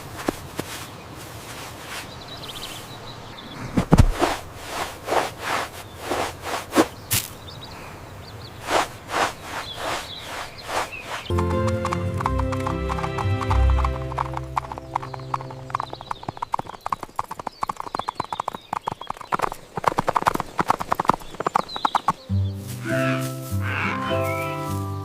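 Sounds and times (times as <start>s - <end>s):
horse hooves clip-clop: 9.1s - 23.5s
background music: 11.3s - 16.0s, 22.2s - 25.0s.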